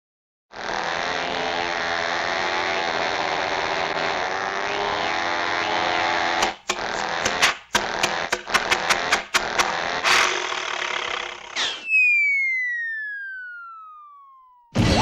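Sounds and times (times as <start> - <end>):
cartoon falling whistle: 11.6 - 15.0.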